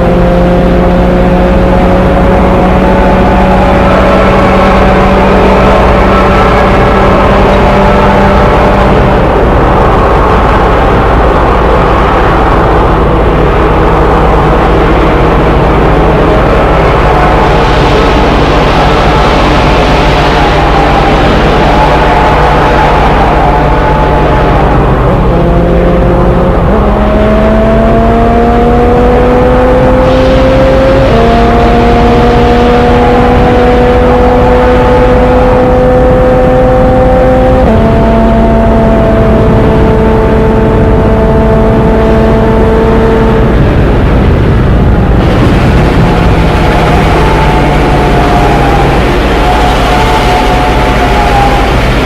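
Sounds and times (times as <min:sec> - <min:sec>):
train rumbling: 0:08.5 - 0:26.8, 0:43.4 - 0:52.0
train motor whine: 0:45.2 - 0:52.0.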